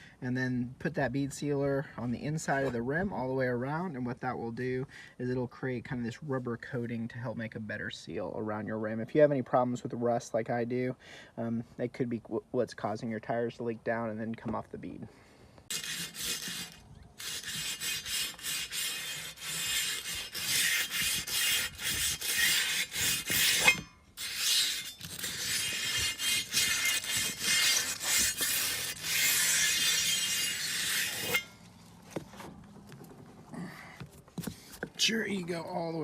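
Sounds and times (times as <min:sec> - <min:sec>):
wire brush scrubbing metal: 0:15.7 - 0:31.6.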